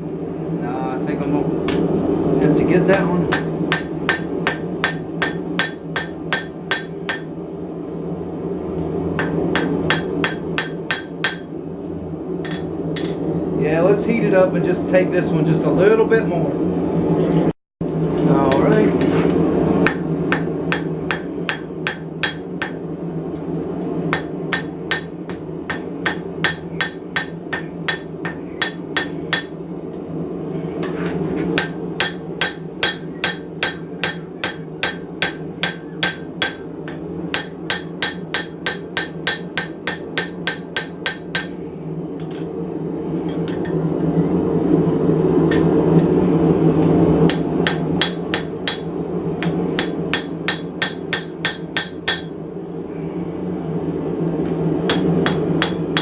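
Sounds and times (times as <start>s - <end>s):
hammer striking steel on anvil: 1.7s - 1.9s, 3.0s - 7.4s, 9.2s - 13.5s, 19.8s - 22.9s, 24.1s - 29.7s, 30.8s - 42.5s, 43.2s - 44.1s, 45.5s - 46.1s, 47.3s - 52.7s, 54.9s - 56.0s.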